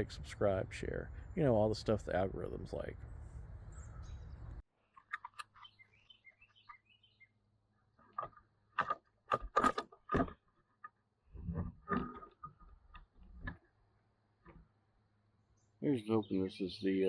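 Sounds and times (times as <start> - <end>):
faint bird chirps: 3.6 - 4.6, 5.5 - 7.4, 15.5 - 17.0.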